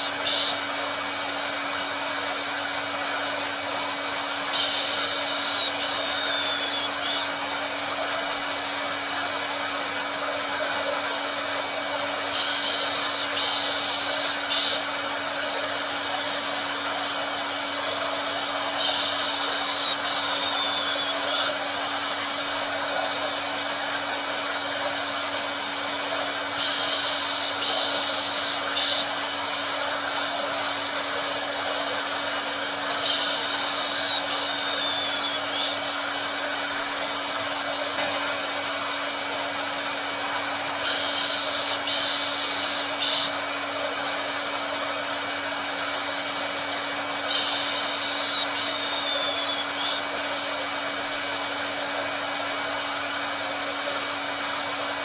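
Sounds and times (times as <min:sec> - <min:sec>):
high hiss: 0:00.0 - 0:00.8, 0:03.1 - 0:07.5, 0:11.9 - 0:39.0, 0:40.2 - 0:43.4, 0:47.2 - 0:50.3
hair dryer running: 0:00.0 - 0:55.0.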